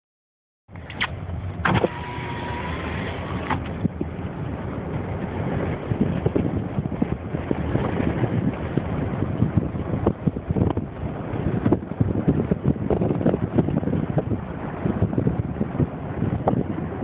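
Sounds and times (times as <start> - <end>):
car road and wind noise: 0.7 - 17.0.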